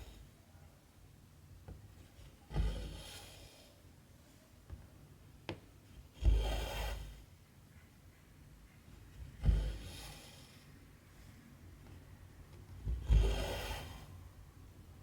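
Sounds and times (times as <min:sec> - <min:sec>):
thread rasping through fabric: 0:02.2 - 0:03.4, 0:06.2 - 0:07.2, 0:12.8 - 0:14.1.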